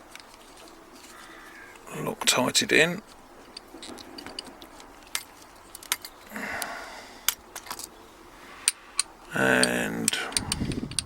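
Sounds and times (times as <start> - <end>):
small metallic clicks: 0.0 - 1.9, 3.1 - 7.9, 8.6 - 11.0
allen key scraping: 3.0 - 6.3, 8.6 - 11.0.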